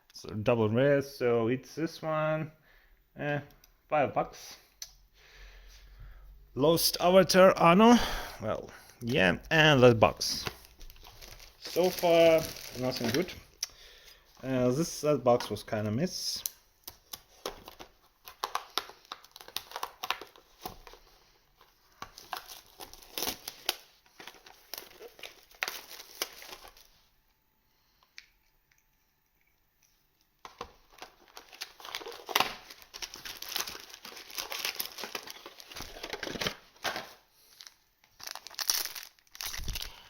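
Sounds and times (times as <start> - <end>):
plastic packaging crinkling and tearing: 10.0 - 13.6, 16.4 - 27.0, 30.4 - 40.0.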